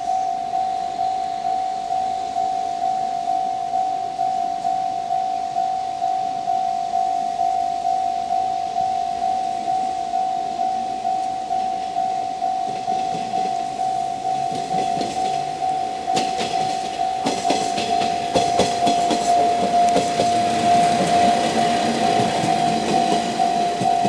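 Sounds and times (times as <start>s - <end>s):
level crossing bell ringing: 0.0s - 24.0s
train wheels clacking over rail joints: 12.7s - 24.0s.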